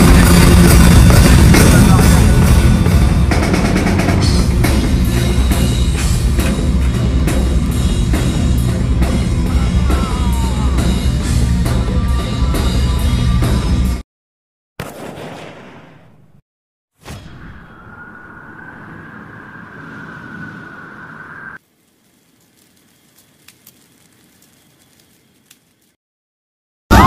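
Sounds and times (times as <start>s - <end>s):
drum kit hits: 0.0s - 10.3s
rock band playing loud: 0.0s - 14.0s.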